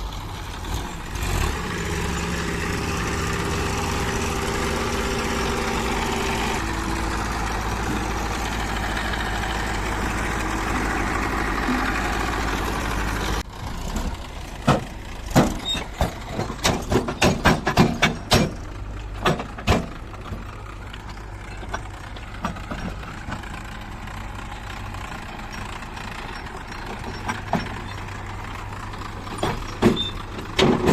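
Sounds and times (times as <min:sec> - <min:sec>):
heavy diesel engine running: 0:00.0 - 0:30.9
sharp metallic knocks and clanks: 0:14.6 - 0:20.5, 0:26.3 - 0:28.1, 0:29.3 - 0:30.9.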